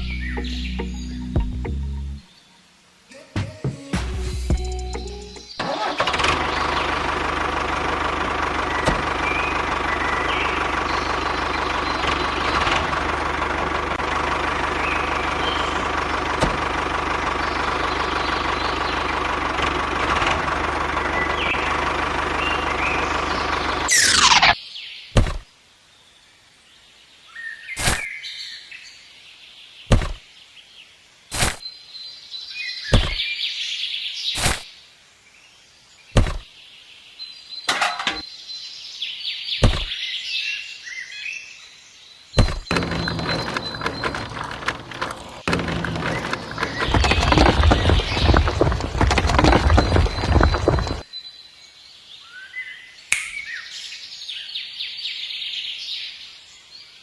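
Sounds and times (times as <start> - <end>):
machine engine running: 5.6 - 24.3, 42.4 - 51.0.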